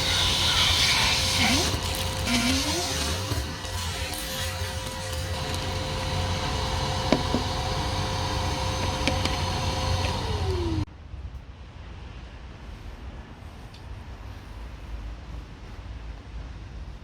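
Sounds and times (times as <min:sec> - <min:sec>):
vacuum cleaner motor whining: 0:00.0 - 0:10.9.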